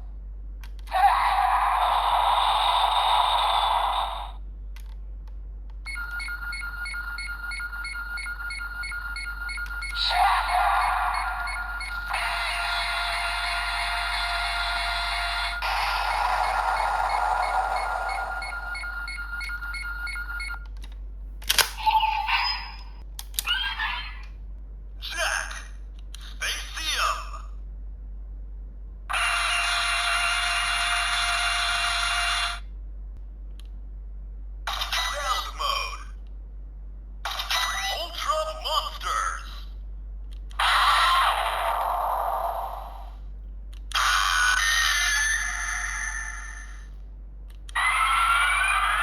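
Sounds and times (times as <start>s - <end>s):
toy standby tone with beeping: 5.9s - 12.6s, 14.0s - 20.6s
electronic sound effects: 14.1s - 19.2s.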